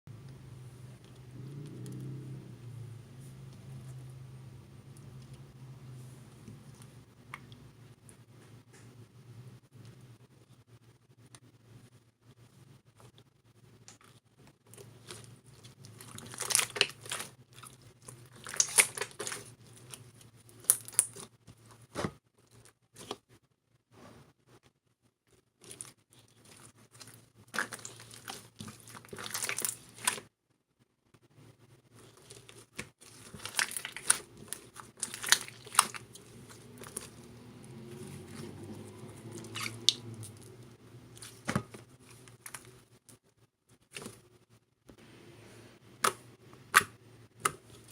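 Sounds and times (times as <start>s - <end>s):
slime crackling and popping: 14.7s - 22.0s, 25.6s - 30.3s, 32.0s - 42.7s.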